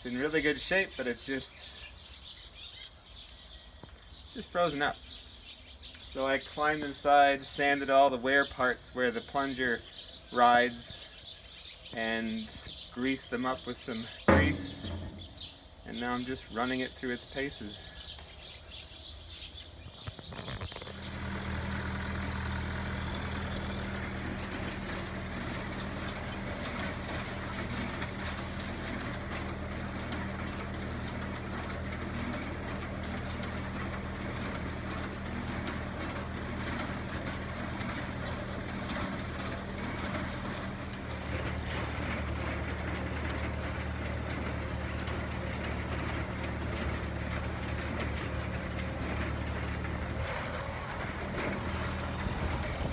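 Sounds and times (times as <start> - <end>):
tractor engine running: 14.3 - 15.8, 20.3 - 52.9.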